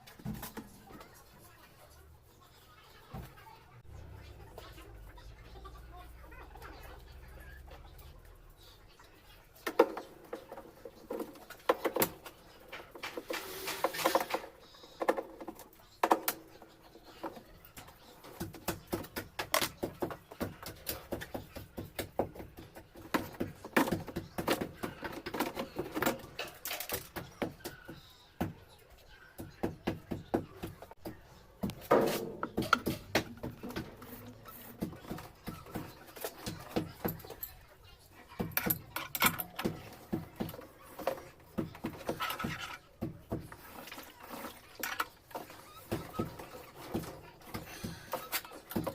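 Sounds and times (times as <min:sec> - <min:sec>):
tools and parts clicking: 0:38.4 - 0:39.8.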